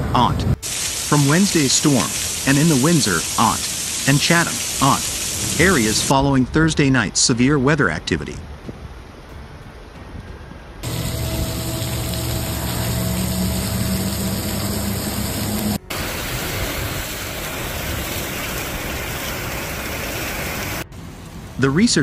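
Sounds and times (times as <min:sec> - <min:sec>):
heavy rain and wind: 0:00.0 - 0:22.0
low hum: 0:09.4 - 0:17.6.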